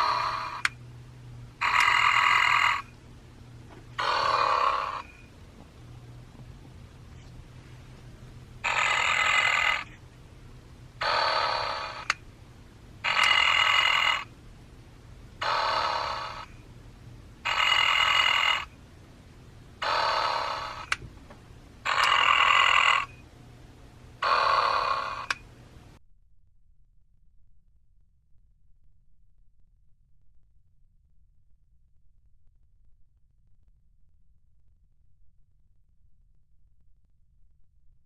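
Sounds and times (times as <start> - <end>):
electronic toy snoring: 0.0 - 0.7, 1.6 - 2.9, 4.0 - 5.2, 8.6 - 10.0, 11.0 - 12.2, 13.0 - 14.3, 15.4 - 16.5, 17.4 - 18.7, 19.8 - 21.0, 21.8 - 23.2, 24.2 - 25.4
toy mechanism humming: 0.0 - 0.8, 1.6 - 3.0, 3.9 - 5.4, 8.5 - 10.1, 10.9 - 12.3, 13.0 - 14.4, 15.4 - 16.7, 17.4 - 18.8, 19.8 - 21.0, 21.8 - 23.3, 24.2 - 25.5.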